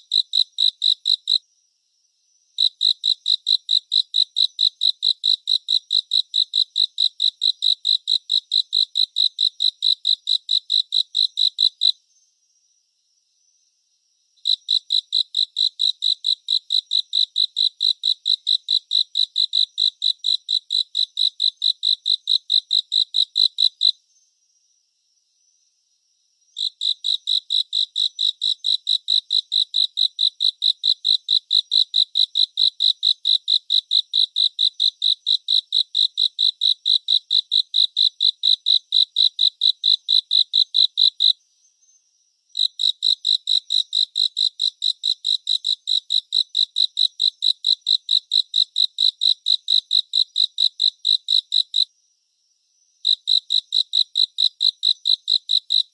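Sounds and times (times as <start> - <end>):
cricket chirping: 0.0 - 55.9.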